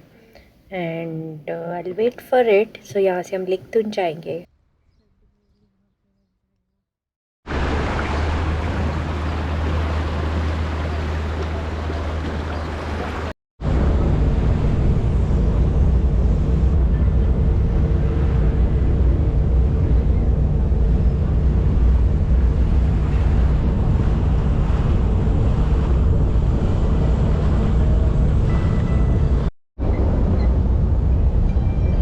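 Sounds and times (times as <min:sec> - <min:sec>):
boat engine rumble: 0:07.5 - 0:32.0.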